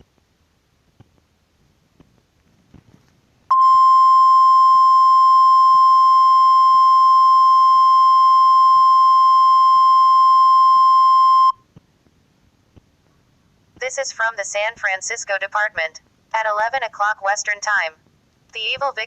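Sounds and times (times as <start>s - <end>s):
steady loud alert beep: 3.5s - 11.6s.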